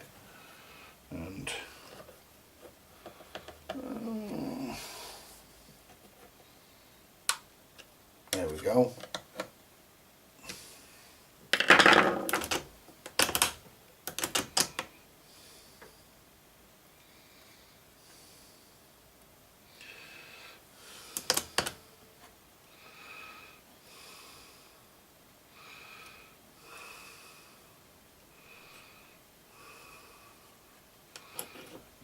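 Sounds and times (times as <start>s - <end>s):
soft breathing: 0.0s - 7.2s, 19.6s - 32.0s.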